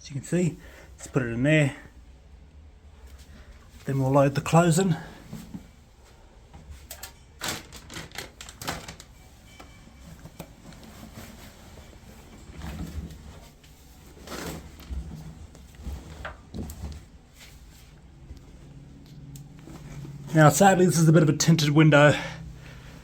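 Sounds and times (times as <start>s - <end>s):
fabric rustling: 2.9s - 21.2s.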